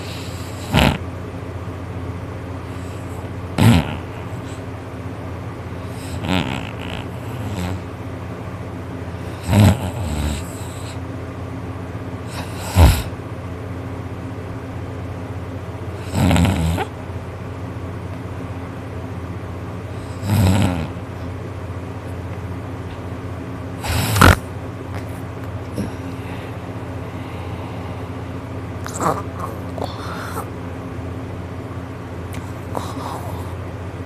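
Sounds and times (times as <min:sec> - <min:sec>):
steady low hum: 0:00.0 - 0:34.0
man snoring loudly: 0:00.1 - 0:01.0, 0:03.6 - 0:04.4, 0:05.9 - 0:07.8, 0:09.3 - 0:10.9, 0:12.3 - 0:13.1, 0:16.0 - 0:16.9, 0:20.1 - 0:21.0, 0:23.8 - 0:24.4.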